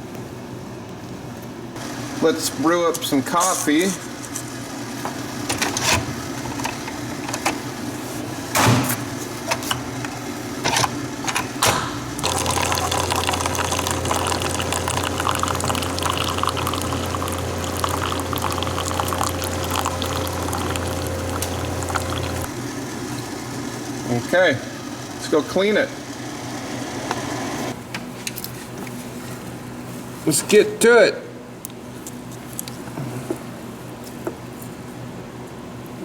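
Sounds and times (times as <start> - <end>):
coffee maker pump humming: 1.8 - 27.8
coffee pouring into cup: 12.2 - 22.5.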